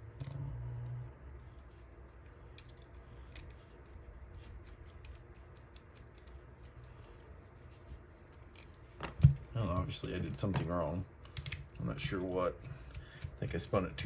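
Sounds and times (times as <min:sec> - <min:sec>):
lock picks clicking and scraping: 0:02.5 - 0:07.3.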